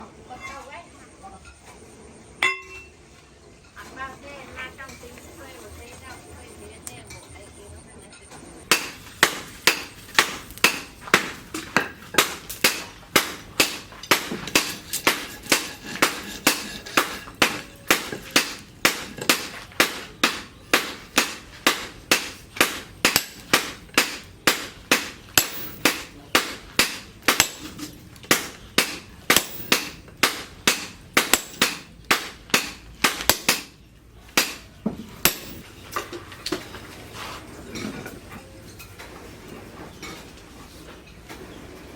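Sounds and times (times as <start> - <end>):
hammer striking metal on anvil: 2.4 - 3.0, 8.7 - 33.8, 34.4 - 35.7.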